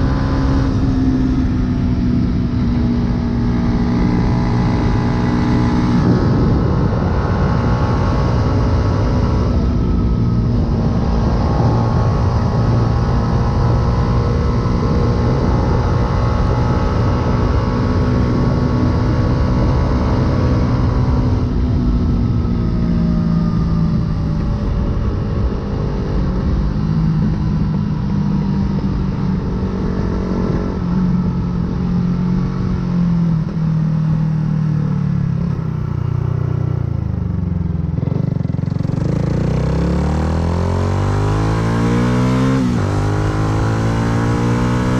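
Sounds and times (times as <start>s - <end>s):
wind rush: 0.0s - 33.6s
motorcycle engine running: 0.0s - 44.9s.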